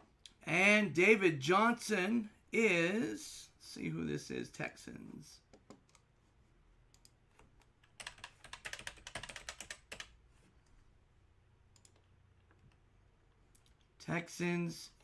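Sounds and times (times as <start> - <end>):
computer keyboard typing: 6.9 - 10.2.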